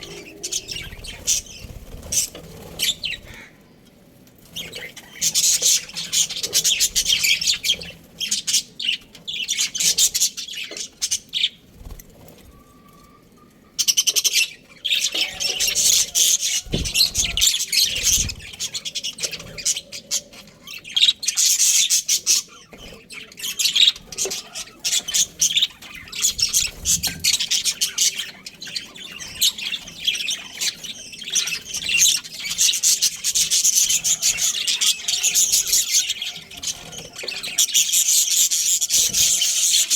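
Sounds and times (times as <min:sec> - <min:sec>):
budgerigars chirping and chattering: 0:00.0 - 0:03.6, 0:04.4 - 0:13.2, 0:13.8 - 0:39.9.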